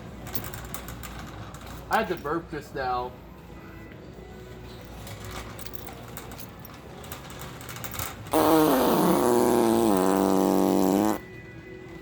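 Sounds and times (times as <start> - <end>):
long buzzing fart: 8.3 - 11.3.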